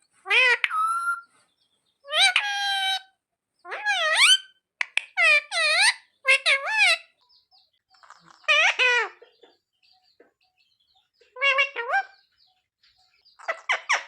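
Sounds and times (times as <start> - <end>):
parrot calls wavering in pitch: 3.7 - 4.5, 11.3 - 12.2.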